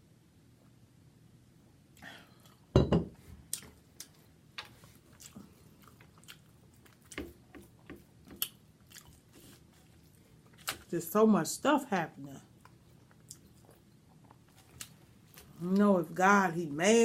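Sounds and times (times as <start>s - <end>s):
person biting and chewing food: 4.8s - 10.9s, 12.6s - 15.6s.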